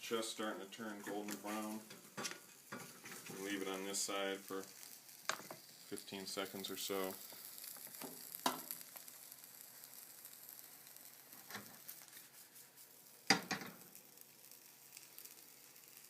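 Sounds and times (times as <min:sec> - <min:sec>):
omelette sizzling in a skillet: 0:00.6 - 0:16.0.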